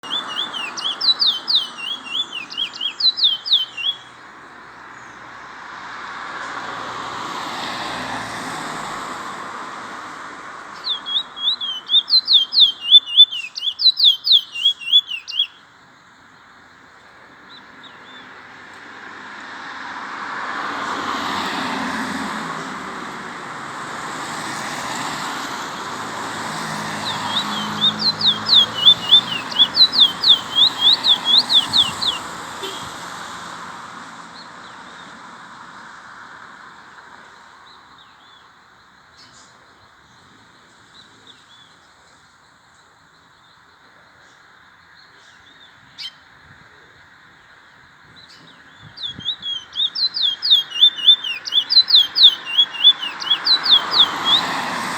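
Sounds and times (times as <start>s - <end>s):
bird rapid high chirping: 0.0s - 4.2s, 10.8s - 15.6s, 26.8s - 32.8s, 48.2s - 54.8s.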